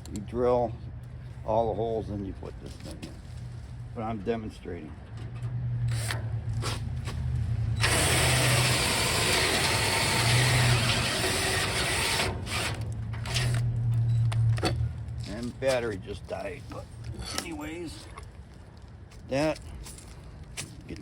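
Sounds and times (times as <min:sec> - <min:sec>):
cordless drill motor hum: 0:07.8 - 0:12.8
cutter grinding into steel: 0:07.8 - 0:13.6.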